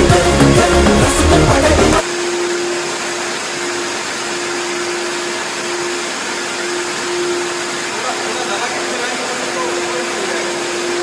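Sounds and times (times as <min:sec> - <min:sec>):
background music: 0:00.0 - 0:02.0
vacuum cleaner motor: 0:02.0 - 0:11.0.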